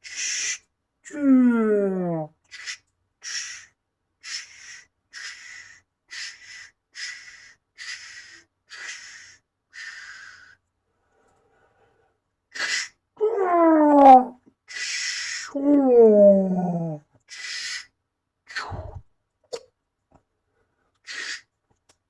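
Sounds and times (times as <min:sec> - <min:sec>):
cartoon breathy hissing huffs: 0:02.6 - 0:10.6, 0:12.5 - 0:13.0, 0:21.1 - 0:21.5
falling cry: 0:15.6 - 0:17.0.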